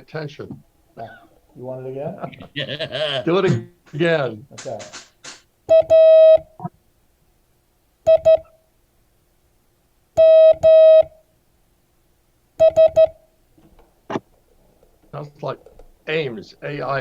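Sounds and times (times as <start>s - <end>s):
morse code beeps: 5.7s - 6.7s, 8.1s - 8.5s, 10.2s - 11.2s, 12.6s - 13.2s.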